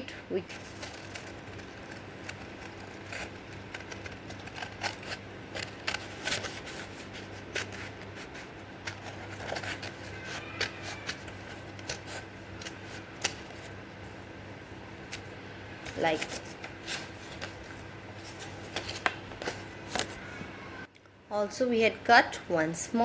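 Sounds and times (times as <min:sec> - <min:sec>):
scissors snipping paper: 0:00.4 - 0:13.7
paper rustling: 0:00.5 - 0:13.8, 0:15.1 - 0:20.4.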